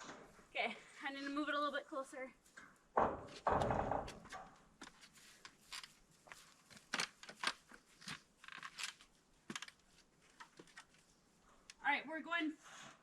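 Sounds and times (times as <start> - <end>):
ladder and roofing panel clicks: 3.0 - 5.0.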